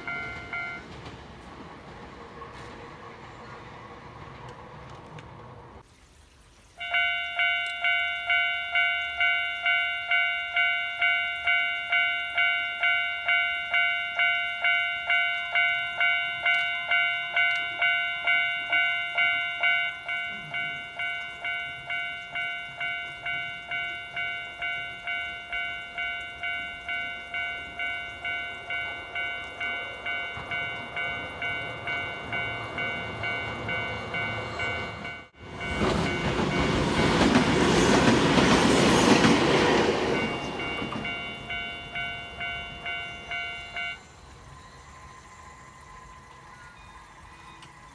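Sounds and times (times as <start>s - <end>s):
level crossing electronic bell: 0.0s - 0.8s, 6.8s - 44.0s
train rumble: 0.0s - 5.8s, 6.9s - 47.9s.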